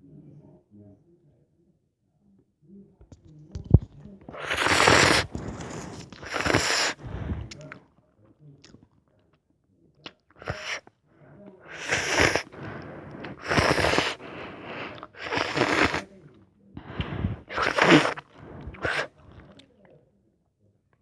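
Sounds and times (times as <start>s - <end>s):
noodles being slurped: 3.7s - 7.8s, 10.3s - 10.8s, 11.6s - 16.2s, 16.8s - 19.6s.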